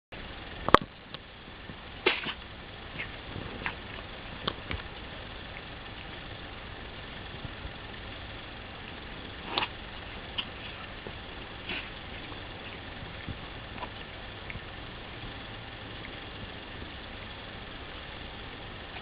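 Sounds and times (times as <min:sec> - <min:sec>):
cat sneezing: 0:02.0 - 0:02.4, 0:11.6 - 0:12.0.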